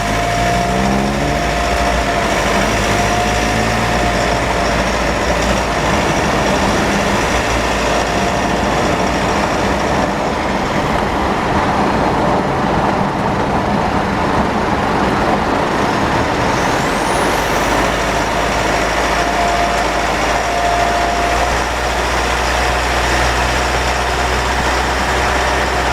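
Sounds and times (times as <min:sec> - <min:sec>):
diesel vehicle rumble and road noise: 0:00.0 - 0:25.9
high-pitched drivetrain whine: 0:00.0 - 0:25.9.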